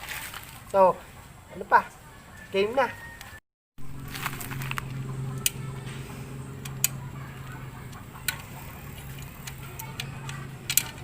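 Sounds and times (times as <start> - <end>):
steady low hum: 3.8 - 11.0
metallic clicks of wrench: 8.3 - 11.0.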